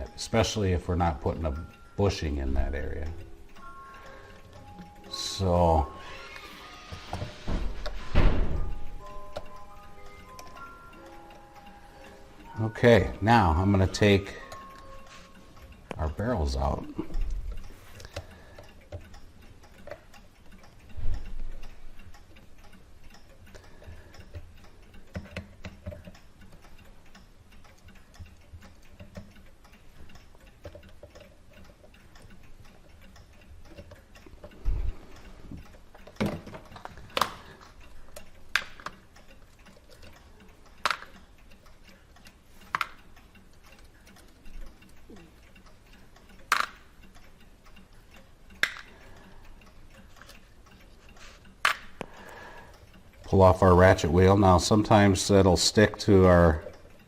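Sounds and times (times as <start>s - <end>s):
small metallic clicks and taps: 13.9s - 57.0s.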